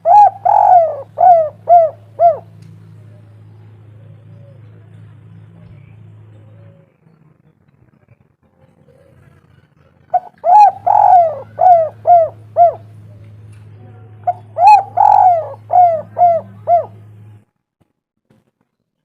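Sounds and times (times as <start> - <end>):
dove cooing: 0.0 - 4.9, 10.0 - 17.2
low hum: 0.0 - 17.6.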